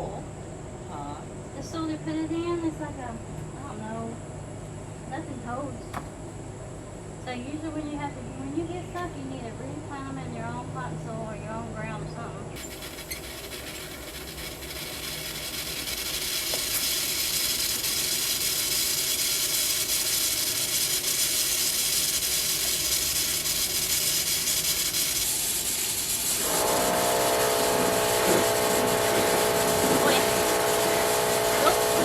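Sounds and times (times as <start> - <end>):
motor-like hum: 11.8 - 32.0
spraying water hiss: 12.6 - 32.0.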